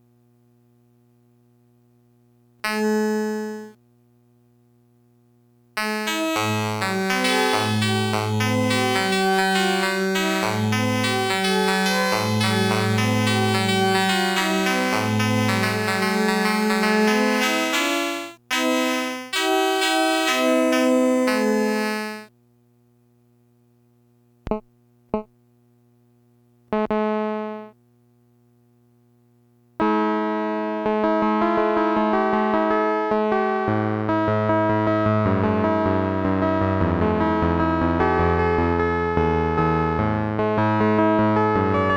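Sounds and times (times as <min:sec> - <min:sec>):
keyboard playing chords and melody: 0:02.6 - 0:03.7, 0:05.8 - 0:22.3, 0:30.0 - 0:41.9
bass line: 0:05.8 - 0:17.8.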